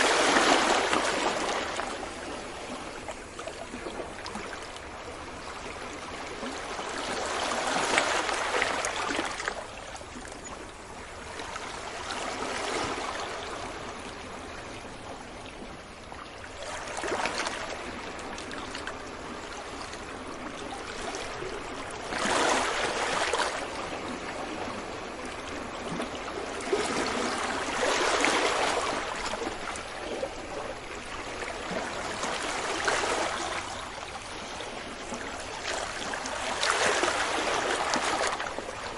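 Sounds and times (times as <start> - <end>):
sea waves breaking on beach: 0.0 - 10.4, 11.2 - 14.5, 16.6 - 38.9.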